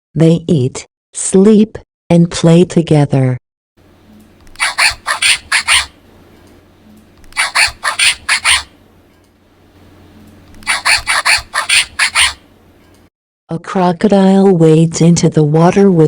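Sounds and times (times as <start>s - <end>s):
meerkat chirping calls from speaker: 4.6s - 6.0s, 7.4s - 8.7s, 10.6s - 12.4s.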